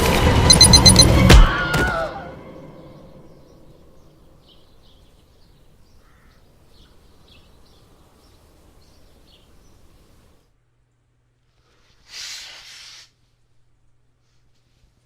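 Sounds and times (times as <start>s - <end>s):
low outdoor background noise: 2.4s - 15.0s
small birds chirping: 2.9s - 11.1s.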